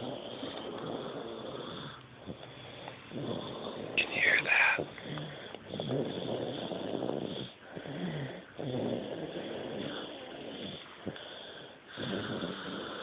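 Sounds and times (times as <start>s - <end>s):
baby snoring loudly: 5.7s - 10.8s, 11.9s - 13.0s.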